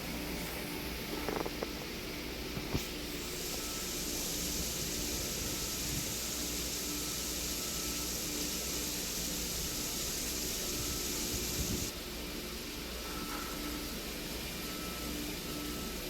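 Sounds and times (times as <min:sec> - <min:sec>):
low mechanical hum: 0:00.0 - 0:16.0
steady hiss: 0:00.0 - 0:16.0.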